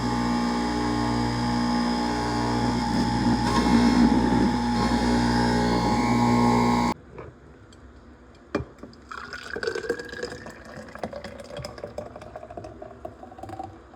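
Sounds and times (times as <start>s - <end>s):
motor running: 0.0s - 7.0s
liquid pouring into container: 9.0s - 13.9s.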